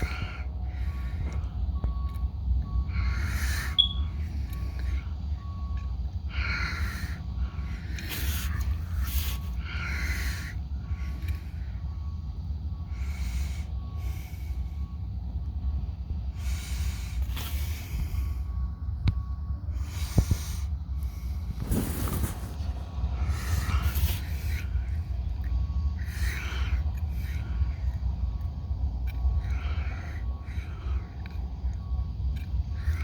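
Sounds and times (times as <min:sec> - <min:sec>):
person breathing hard: 0:00.0 - 0:15.1, 0:16.1 - 0:33.0
low rumble: 0:14.2 - 0:32.9.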